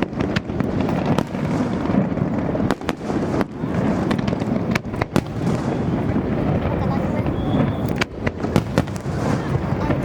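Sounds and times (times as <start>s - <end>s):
fireworks rumble: 0.0s - 10.0s
sharp firework bangs: 0.0s - 10.0s.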